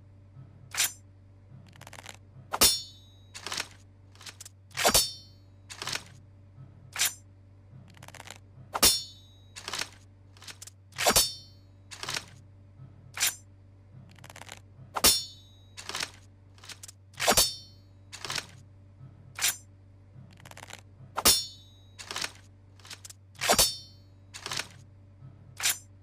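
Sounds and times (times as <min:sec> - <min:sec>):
faint low hum: 0:00.0 - 0:26.0
metallic rings: 0:02.6 - 0:05.9, 0:08.8 - 0:11.7, 0:15.0 - 0:16.2, 0:17.2 - 0:18.4, 0:21.2 - 0:24.5
sword swishes: 0:04.8 - 0:05.2, 0:17.2 - 0:17.7.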